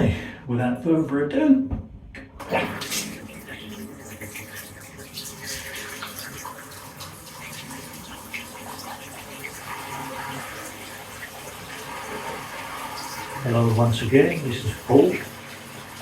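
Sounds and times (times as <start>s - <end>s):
bath water running: 2.4s - 16.0s.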